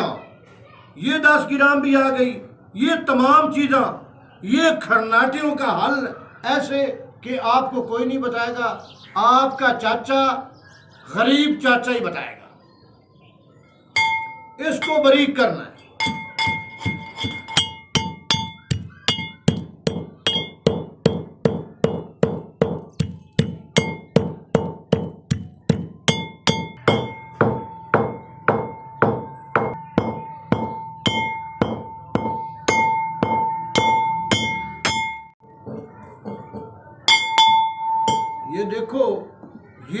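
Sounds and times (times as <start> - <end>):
pestle pounding in metal mortar: 16.0 - 35.3, 37.1 - 38.4.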